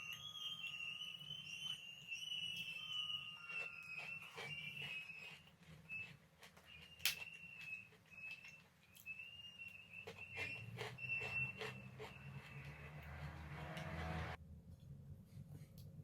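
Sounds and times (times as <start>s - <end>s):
cookie crunching and chewing: 1.3s - 13.9s.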